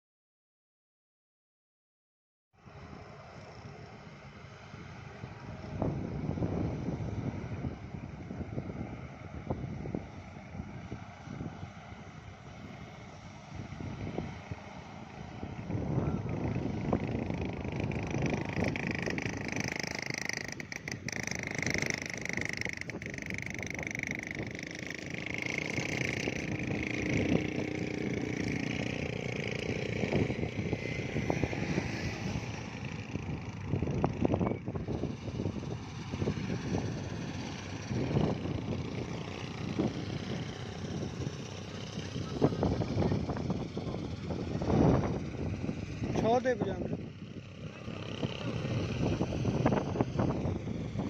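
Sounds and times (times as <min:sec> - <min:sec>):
motor running: 0:14.8 - 0:51.0.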